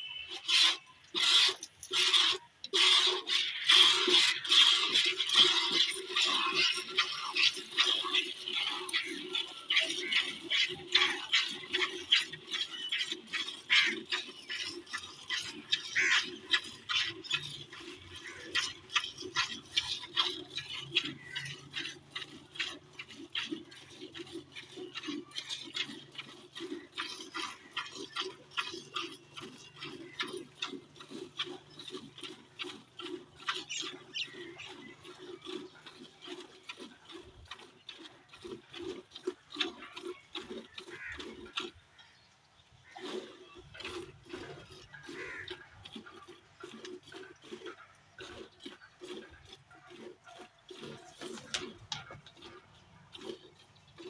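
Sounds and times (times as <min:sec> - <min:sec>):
farm animals calling rapidly: 0:00.0 - 0:54.0.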